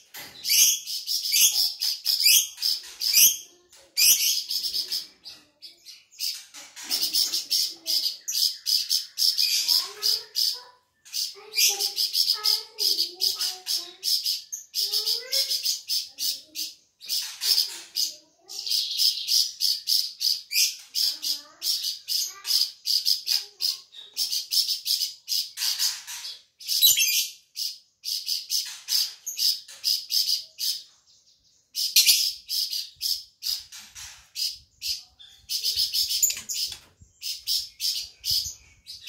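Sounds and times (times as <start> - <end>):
bird singing high chirps: 29.4 - 39.0.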